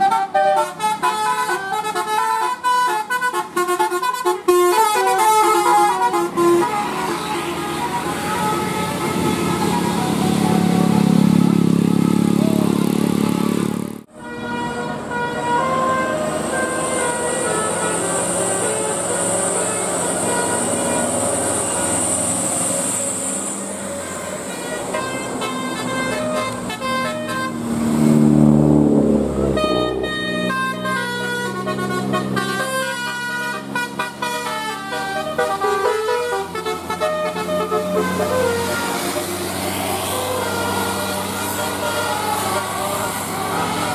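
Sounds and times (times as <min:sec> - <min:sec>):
bus engine rumble: 0:00.0 - 0:43.9
musical bus horn: 0:00.0 - 0:43.9.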